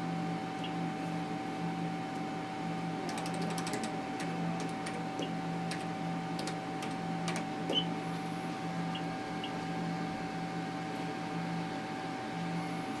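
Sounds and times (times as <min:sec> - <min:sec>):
pulsing electrical hum: 0:00.0 - 0:13.0
sharp control clicks: 0:03.1 - 0:07.8.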